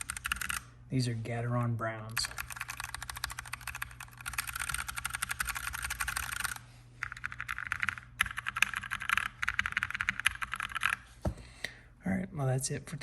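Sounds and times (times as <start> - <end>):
mechanical keyboard typing: 0.0 - 0.6, 2.1 - 11.0.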